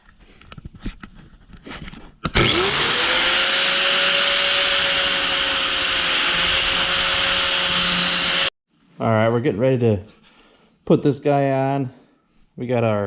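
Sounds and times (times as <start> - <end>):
angle grinder whining: 2.3 - 8.6.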